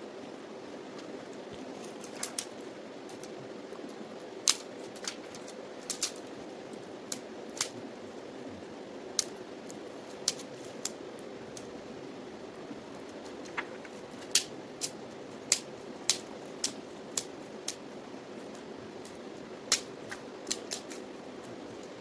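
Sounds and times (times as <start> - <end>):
campfire crackling and popping: 1.5 - 7.8, 12.8 - 17.9, 18.5 - 22.0.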